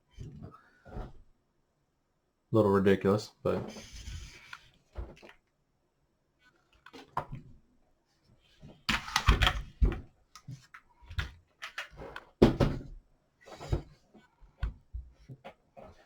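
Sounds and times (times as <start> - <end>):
handling knocks and clunks: 11.6 - 12.9.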